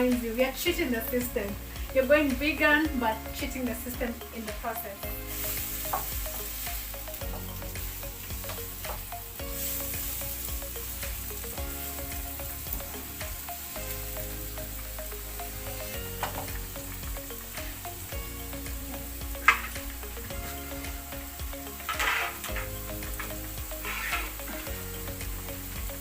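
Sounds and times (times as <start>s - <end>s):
mushrooms sizzling in a pan: 0.0s - 26.0s
spoon scraping a pan: 21.8s - 22.7s, 23.8s - 24.7s.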